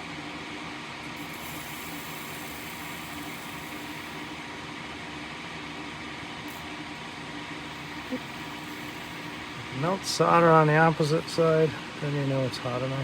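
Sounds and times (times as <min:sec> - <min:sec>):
small electric fan whirring: 0:00.0 - 0:13.0.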